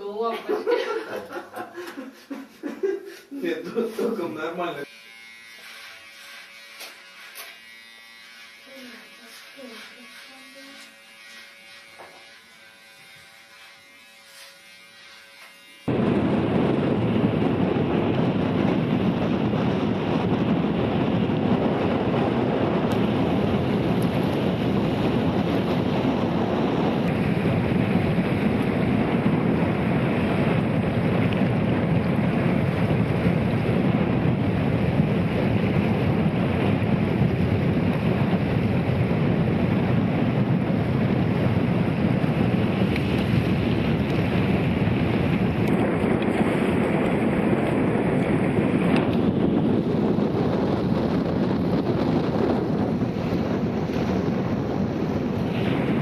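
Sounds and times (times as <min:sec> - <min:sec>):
wind blowing across microphone: 0:15.9 - 0:56.0.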